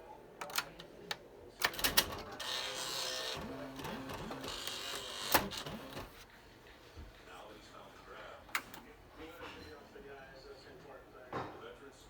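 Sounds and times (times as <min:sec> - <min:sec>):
typewriter clicks: 0:01.6 - 0:06.2
typewriter mechanism whirring: 0:01.6 - 0:06.2.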